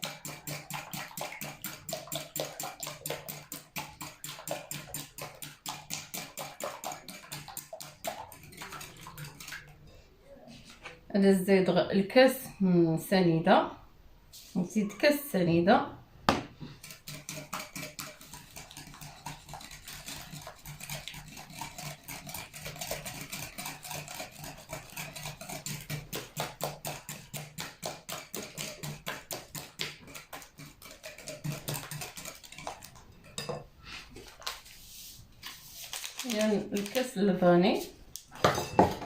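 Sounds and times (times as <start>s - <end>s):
whisk clicking against bowl: 0.0s - 9.7s, 16.8s - 33.5s, 35.9s - 37.2s.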